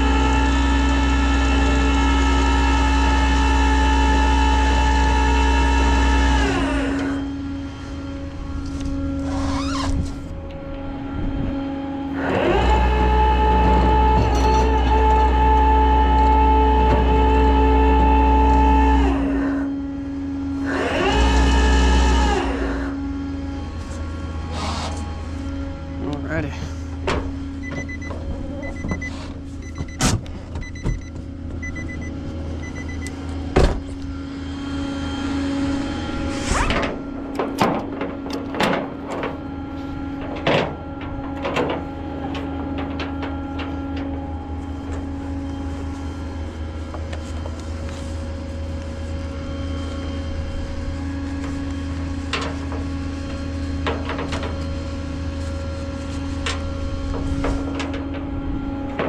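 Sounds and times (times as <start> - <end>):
vehicle engine running: 0.0 - 59.0
high electronic beep: 27.6 - 30.0, 30.6 - 33.1.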